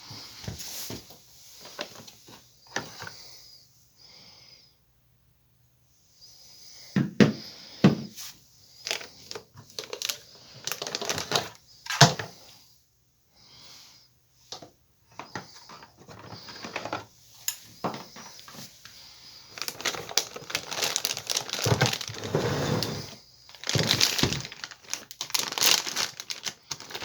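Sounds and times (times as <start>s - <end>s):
packaging rustling: 1.6s - 2.2s, 8.8s - 12.2s, 15.6s - 17.1s, 19.5s - 27.0s.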